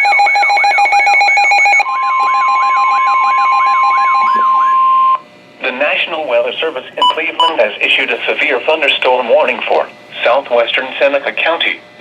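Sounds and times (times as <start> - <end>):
siren wailing: 0.0 - 5.2
steady warning tone: 0.0 - 11.6
rapid beeping: 7.0 - 9.0.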